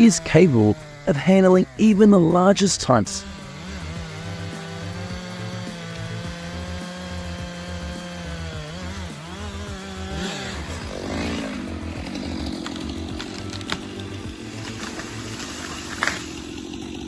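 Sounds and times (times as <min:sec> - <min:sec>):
chainsaw cutting wood: 0:00.0 - 0:17.0
sharp crack: 0:10.2 - 0:16.4.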